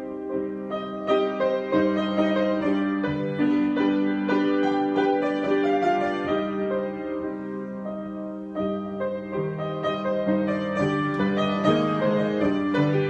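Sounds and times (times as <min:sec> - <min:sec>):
slow piano chords and melody: 0:00.0 - 0:13.0.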